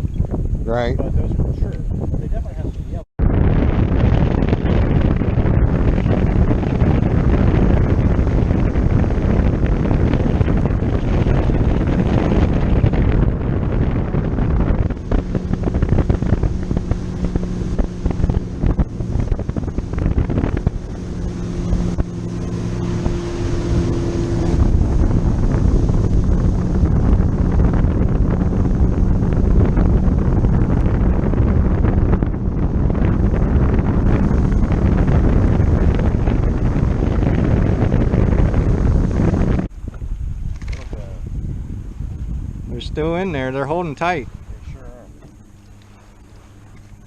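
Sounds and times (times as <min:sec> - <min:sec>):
boat motor running: 0:00.0 - 0:47.0
wind buffeting microphone: 0:00.0 - 0:47.0.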